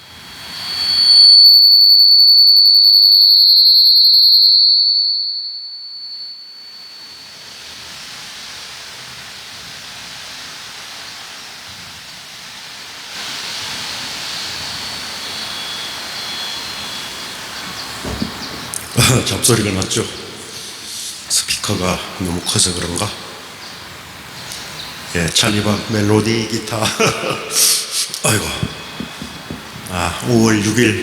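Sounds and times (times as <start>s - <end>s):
microphone feedback howl: 0.0s - 8.4s, 14.2s - 31.0s
amplifier hiss: 6.6s - 31.0s.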